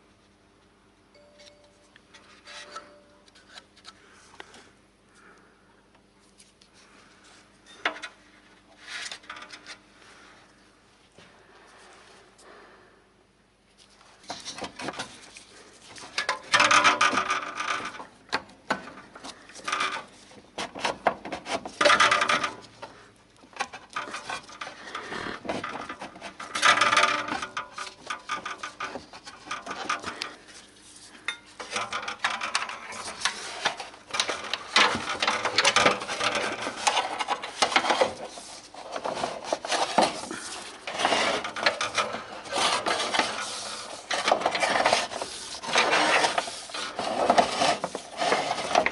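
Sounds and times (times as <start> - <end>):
scraping and rasping metal: 14.2 - 23.0, 23.6 - 48.9.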